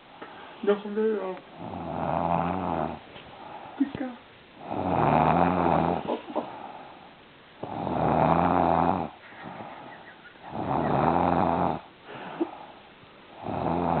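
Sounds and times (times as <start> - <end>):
woman snoring: 1.5 - 3.8, 4.6 - 7.0, 7.6 - 9.9, 10.5 - 14.0.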